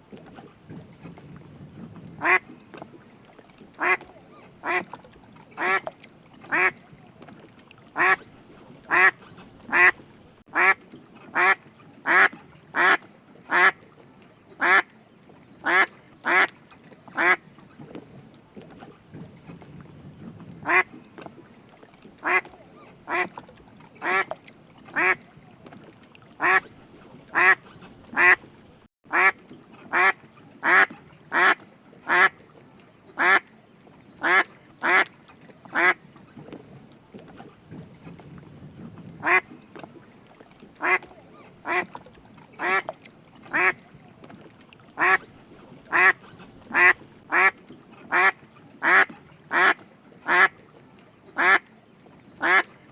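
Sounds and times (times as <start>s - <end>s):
duck quacking: 2.2s - 2.4s, 3.8s - 4.0s, 4.6s - 4.8s, 6.5s - 6.8s, 8.0s - 8.2s, 8.9s - 13.8s, 14.6s - 14.8s, 15.6s - 16.5s, 20.6s - 20.9s, 22.2s - 22.5s, 23.1s - 23.3s, 25.0s - 25.2s, 26.4s - 26.6s, 27.3s - 28.5s, 29.1s - 32.3s, 34.2s - 35.1s, 39.2s - 39.5s, 40.8s - 41.0s, 41.6s - 41.9s, 42.6s - 42.9s, 43.5s - 43.8s, 45.0s - 45.2s, 45.9s - 47.5s, 48.1s - 50.5s, 51.4s - 51.6s, 52.4s - 52.6s.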